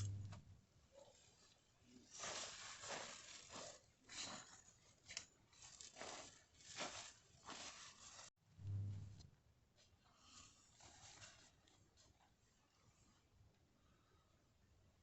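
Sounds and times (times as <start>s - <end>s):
tent fabric rustling: 1.0s - 8.4s.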